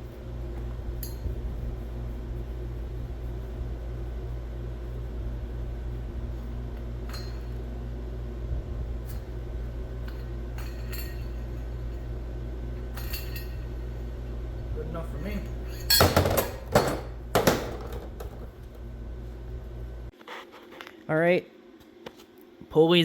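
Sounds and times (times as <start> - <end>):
steady low hum: 0.0 - 23.0
light metallic clinks: 10.0 - 12.1, 12.9 - 14.0.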